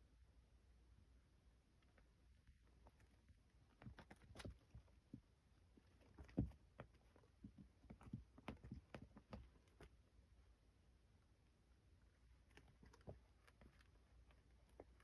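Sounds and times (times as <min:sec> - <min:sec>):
kittens tapping and pouncing: 0:02.4 - 0:10.0, 0:12.3 - 0:15.0.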